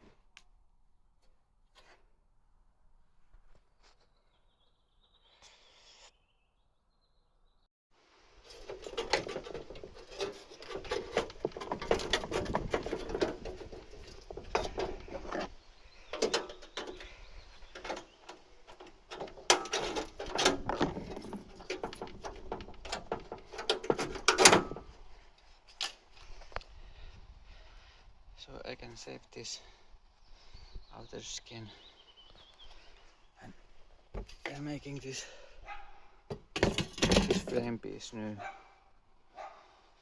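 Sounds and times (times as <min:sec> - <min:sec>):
sheet metal knocks and scrapes: 0:08.5 - 0:17.2, 0:17.8 - 0:24.9, 0:36.3 - 0:37.7.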